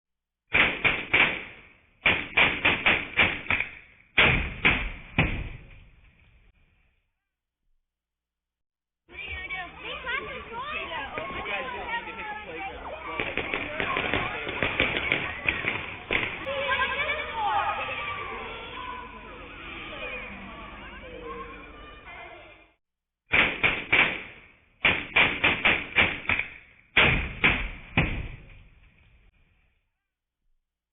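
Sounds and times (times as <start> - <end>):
sharp knocks: 23.3 - 28.6.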